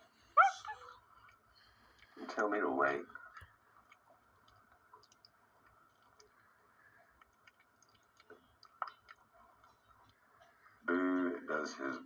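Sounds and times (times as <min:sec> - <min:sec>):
monkey eating wet mouth sounds: 0:03.2 - 0:10.9.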